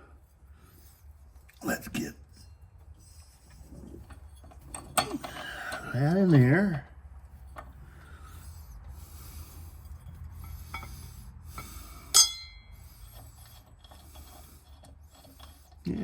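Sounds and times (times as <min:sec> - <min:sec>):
metal parts scraping: 0:07.3 - 0:16.0
sharp metallic clink: 0:12.1 - 0:12.7.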